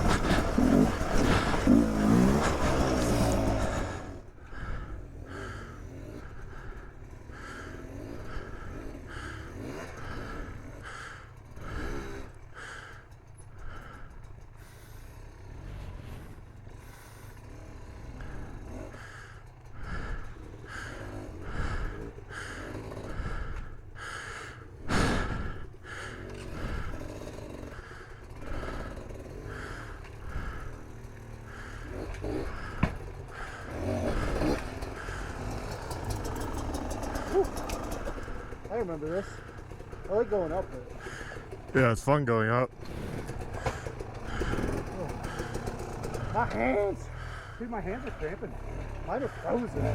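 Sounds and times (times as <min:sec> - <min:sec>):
person breathing hard inside helmet: 0:00.0 - 0:41.9, 0:42.7 - 0:49.9
low motorcycle engine rumble: 0:00.0 - 0:49.9
sharp breath or knock: 0:27.8 - 0:38.7.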